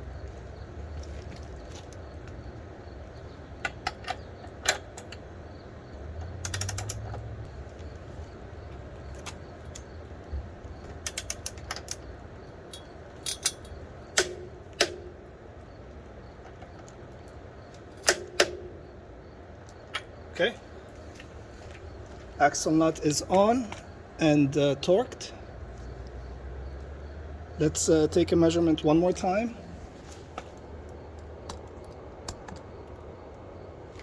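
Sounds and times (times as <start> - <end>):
ratchet wrench clicking: 6.3 - 7.3.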